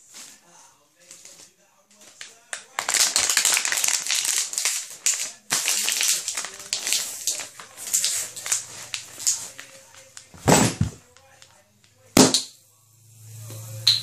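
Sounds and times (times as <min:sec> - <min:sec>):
bottle and cap handled: 0:10.4 - 0:11.0
bottle cap popping off: 0:12.2 - 0:12.5.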